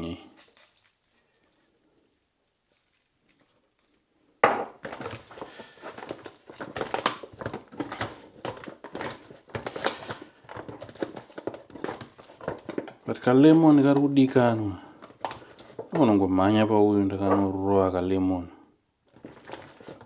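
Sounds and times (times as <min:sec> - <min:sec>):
rustling and crinkling: 0:00.0 - 0:17.9, 0:19.0 - 0:20.0.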